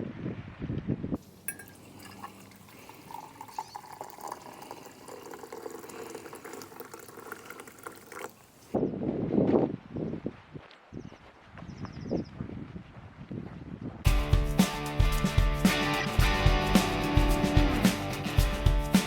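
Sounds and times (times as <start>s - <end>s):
liquid pouring and trickling: 1.2s - 8.8s
wind buffeting microphone: 8.7s - 14.0s.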